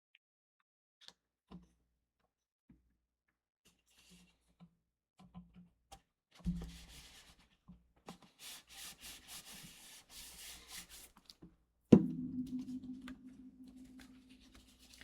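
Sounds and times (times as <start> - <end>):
knock on work surface: 12.0 - 14.2.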